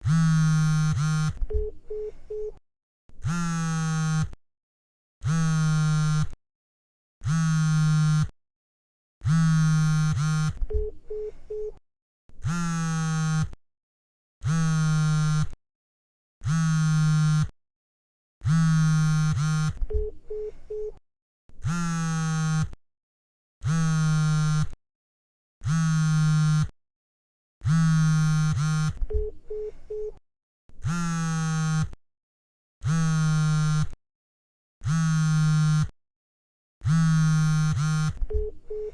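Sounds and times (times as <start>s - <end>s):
mobile phone vibrating: 0.0s - 4.4s, 5.2s - 6.4s, 7.2s - 8.4s, 9.2s - 13.6s, 14.4s - 15.6s, 16.4s - 17.6s, 18.4s - 22.8s, 23.6s - 24.8s, 25.6s - 26.8s, 27.6s - 32.0s, 32.8s - 34.0s, 34.8s - 36.0s, 36.8s - 38.9s.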